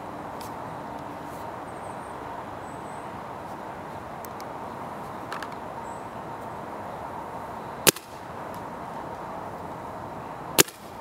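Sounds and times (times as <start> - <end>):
steady background hiss: 0.0 - 11.0
paintball marker shot: 7.9 - 8.2, 10.6 - 10.9.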